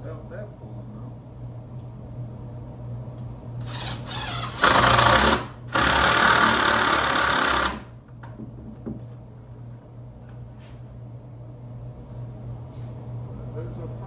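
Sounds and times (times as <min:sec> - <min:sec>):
power drill running: 0:03.6 - 0:07.9.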